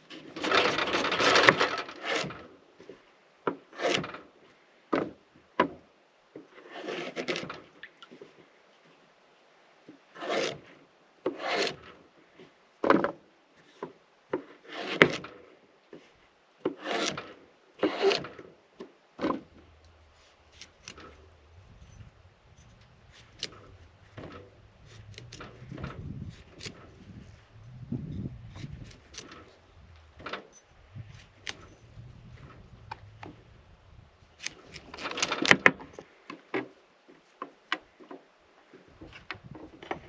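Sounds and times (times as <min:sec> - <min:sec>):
rubbing and scraping on wood: 0:00.0 - 0:03.0, 0:03.7 - 0:04.2, 0:06.5 - 0:08.4, 0:10.1 - 0:12.5, 0:13.6 - 0:18.5, 0:19.2 - 0:37.3.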